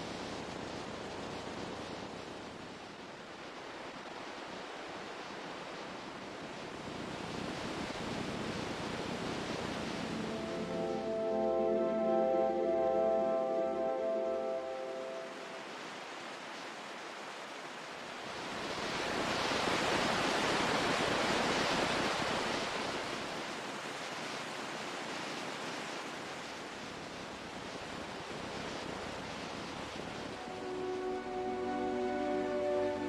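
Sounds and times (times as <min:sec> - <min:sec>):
ocean surf rushing: 0:06.5 - 0:25.0, 0:29.6 - 0:33.0.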